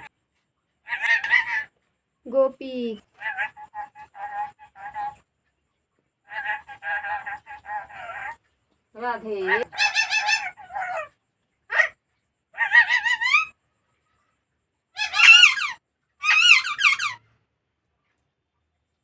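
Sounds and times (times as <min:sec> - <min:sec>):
parrot squawking: 0:00.9 - 0:01.7, 0:03.2 - 0:05.2, 0:06.3 - 0:08.4, 0:09.4 - 0:11.1, 0:11.7 - 0:11.9, 0:12.6 - 0:13.5, 0:15.0 - 0:17.2.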